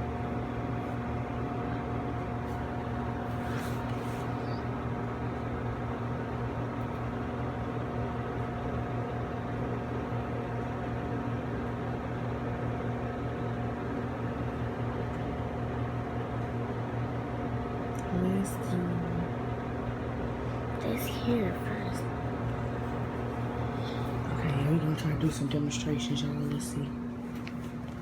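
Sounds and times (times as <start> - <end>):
mechanical hum with hiss: 0.0 - 28.0.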